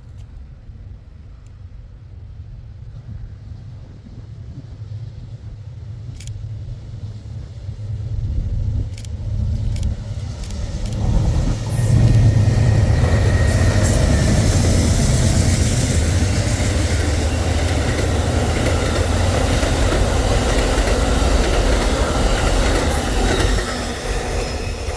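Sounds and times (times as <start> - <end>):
train engine rumble: 0.0 - 24.9
train rolling past: 0.0 - 24.9
sharp clicks: 8.9 - 12.2.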